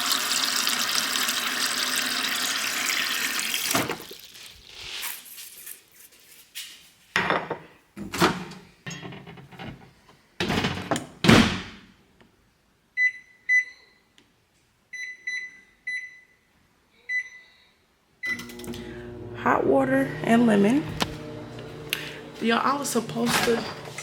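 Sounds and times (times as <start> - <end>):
microwave keypad beeps: 13.0 - 14.0, 14.9 - 16.4, 17.1 - 17.5.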